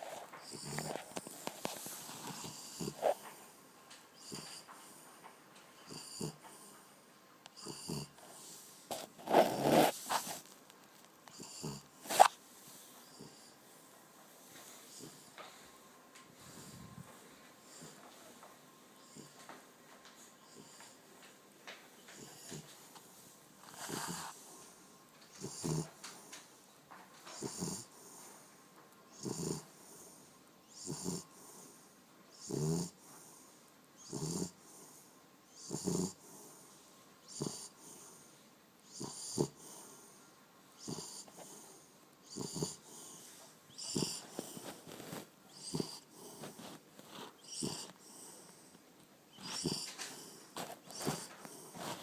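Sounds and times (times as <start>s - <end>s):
dog snoring: 0.0s - 3.4s, 4.1s - 5.0s, 5.8s - 6.7s, 7.6s - 10.5s, 11.3s - 12.4s, 13.1s - 13.6s, 14.7s - 15.4s, 16.4s - 18.4s, 19.0s - 19.5s, 20.4s - 21.0s, 22.0s - 23.0s, 23.6s - 24.6s, 25.3s - 26.4s, 27.3s - 28.2s, 29.1s - 33.4s, 34.0s - 36.6s, 37.2s - 38.3s, 38.9s - 40.2s, 40.8s - 52.0s.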